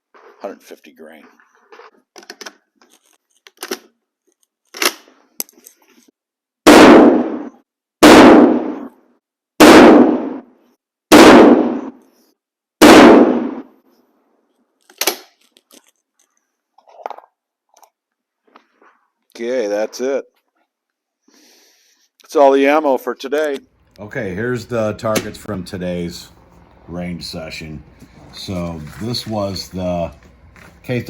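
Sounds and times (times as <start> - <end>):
rifle shots with echo: 6.7 - 8.9, 9.6 - 10.5, 11.1 - 12.0, 12.8 - 13.7.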